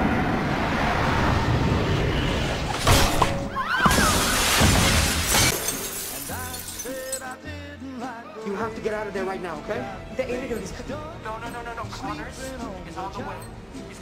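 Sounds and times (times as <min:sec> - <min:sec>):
crash with glass shattering: 0:02.7 - 0:07.4.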